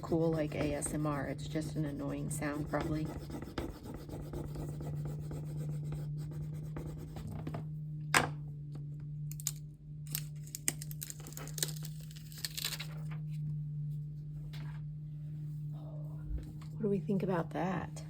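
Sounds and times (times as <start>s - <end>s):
paper scratching and rubbing: 0.0s - 7.4s.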